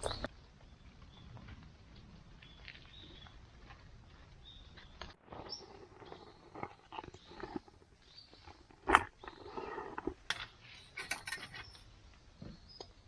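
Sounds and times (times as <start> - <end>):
bird chirps: 0.0 - 1.4, 2.4 - 3.4, 4.4 - 9.7, 10.4 - 13.0.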